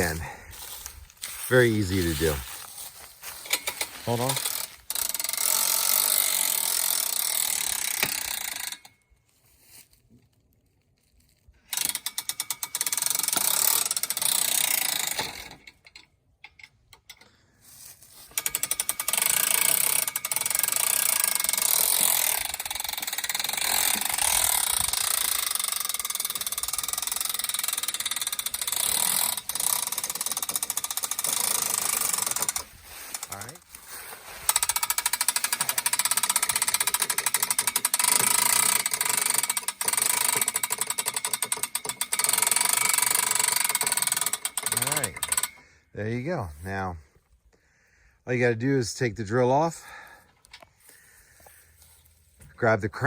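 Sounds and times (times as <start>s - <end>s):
winch ratchet clicking: 3.2s - 9.0s, 11.7s - 17.4s, 18.1s - 45.7s
power drill running: 18.3s - 33.3s.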